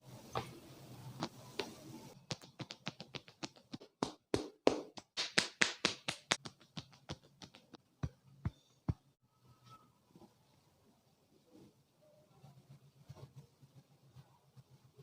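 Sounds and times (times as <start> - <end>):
hand taps and slaps: 1.6 - 9.0.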